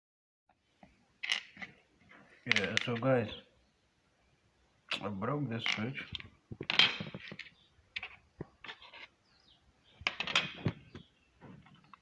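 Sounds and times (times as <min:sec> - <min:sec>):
scraping rustles: 0:05.6 - 0:09.2.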